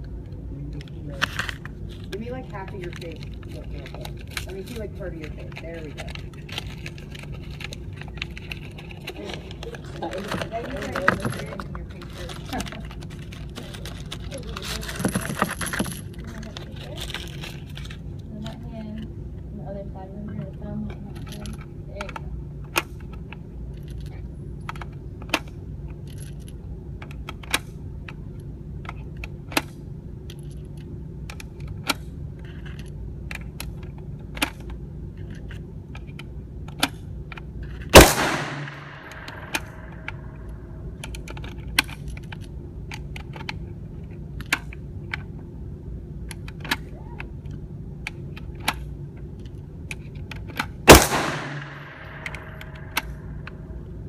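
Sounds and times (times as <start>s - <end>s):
loud gunshots with echo: 38.0s - 39.5s, 50.9s - 52.2s
faint sharp cracks: 38.0s - 40.6s, 50.9s - 53.5s.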